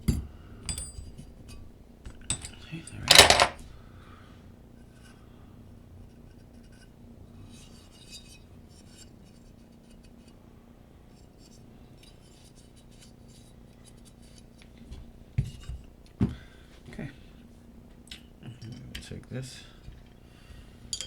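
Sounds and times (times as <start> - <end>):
small metal tools clicking and scraping: 2.2 - 3.6.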